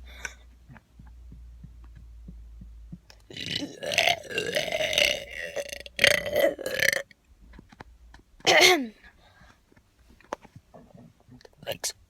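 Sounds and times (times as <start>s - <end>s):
person burping: 3.3s - 7.1s, 8.4s - 8.9s.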